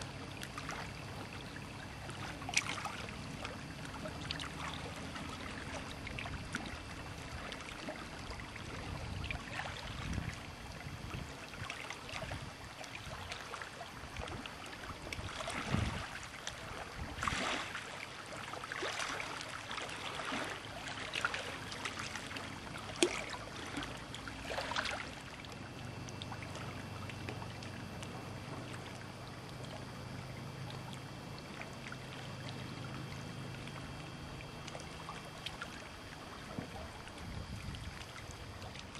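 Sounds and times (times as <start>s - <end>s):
steady low hum: 0.0s - 38.9s
water lapping against boat hull: 0.0s - 38.9s.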